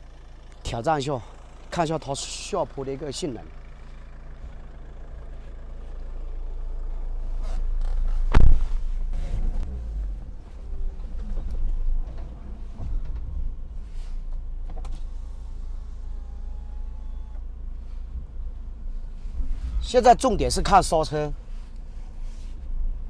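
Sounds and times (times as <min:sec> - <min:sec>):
engine and tyre rumble: 0:00.0 - 0:23.0
vehicle body knocks and creaks: 0:07.4 - 0:13.6
loud thump: 0:08.3 - 0:08.7.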